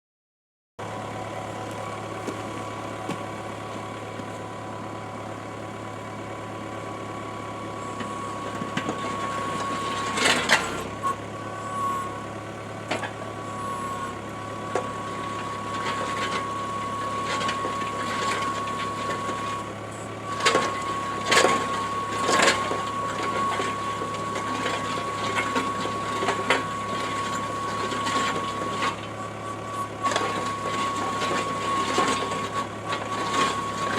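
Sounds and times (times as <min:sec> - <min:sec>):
earth auger drive whining: 0:00.8 - 0:33.9
auger knocking and grinding rock: 0:03.0 - 0:03.3.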